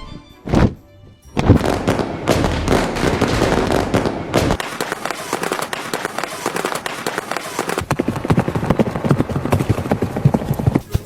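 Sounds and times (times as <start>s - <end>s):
single thump: 0.5s - 0.8s
dense crackling: 1.4s - 10.9s.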